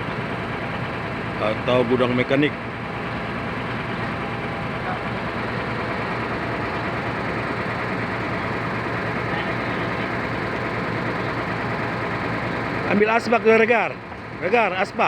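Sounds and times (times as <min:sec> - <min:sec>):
heavy engine idling: 0:00.0 - 0:15.0.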